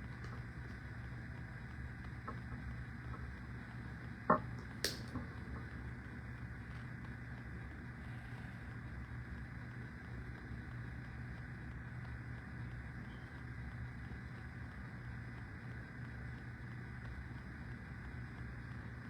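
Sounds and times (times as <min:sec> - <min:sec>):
low hum of room tone: 0:00.0 - 0:19.0.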